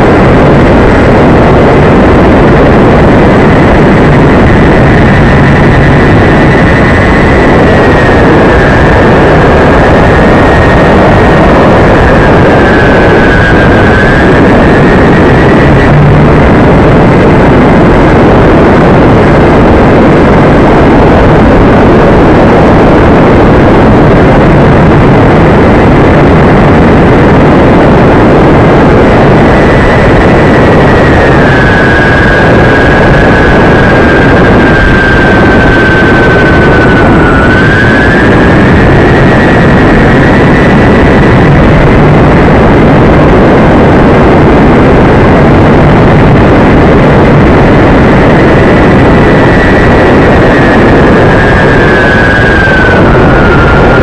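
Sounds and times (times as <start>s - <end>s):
loud rushing noise: 0.0s - 54.0s
model aircraft motor whine: 51.3s - 54.0s.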